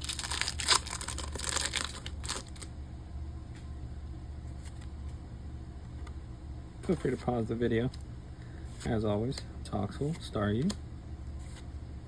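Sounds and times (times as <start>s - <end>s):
foil wrapper crinkling and tearing: 0.0s - 2.7s
low steady hum: 0.0s - 12.0s.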